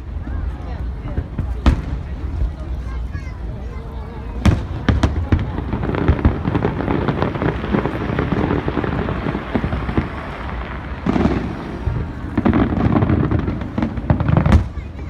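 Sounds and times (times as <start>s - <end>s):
fireworks crackling: 0.0s - 15.0s
fireworks booms: 0.2s - 3.2s, 4.2s - 15.0s.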